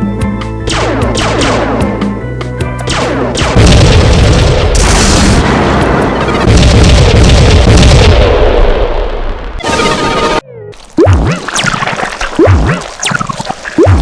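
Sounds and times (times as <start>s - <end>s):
explosion booms and deep rumble: 3.4s - 9.6s.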